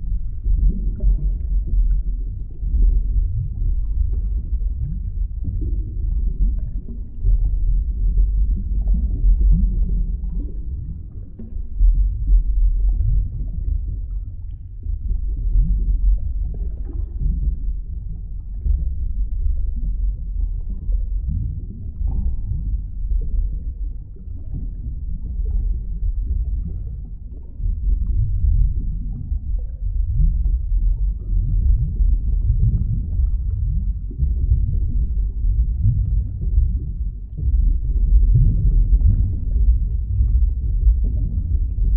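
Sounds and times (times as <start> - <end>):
faint bubbling: 0.0 - 41.9
underwater rumble of moving water: 0.0 - 41.9.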